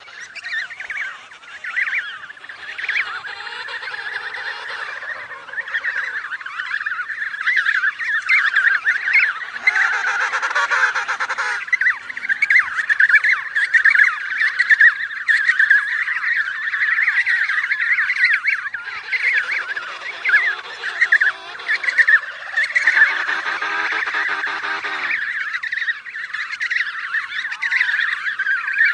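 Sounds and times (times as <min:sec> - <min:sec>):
penguins honking and squawking: 0:08.4 - 0:14.2, 0:17.7 - 0:25.8.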